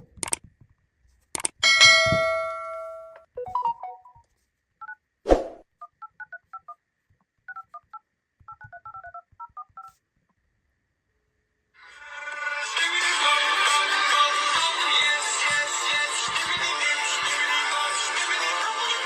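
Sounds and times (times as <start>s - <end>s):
phone keypad touch tones: 3.4s - 4.2s, 7.5s - 10.0s.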